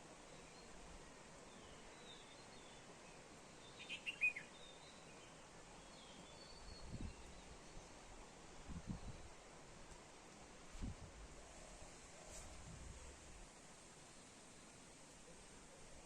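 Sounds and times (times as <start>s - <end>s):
background hiss: 0.0s - 16.0s
bird chirping: 1.5s - 7.8s.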